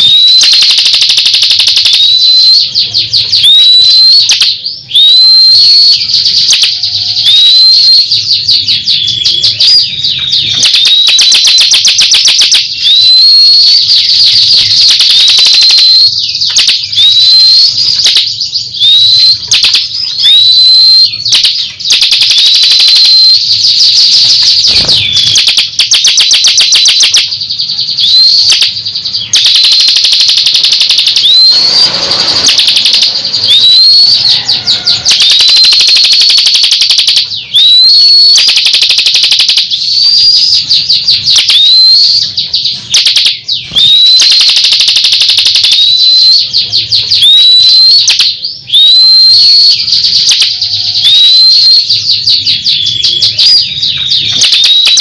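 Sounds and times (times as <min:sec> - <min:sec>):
songbird chattering trills: 0:02.4 - 0:11.2.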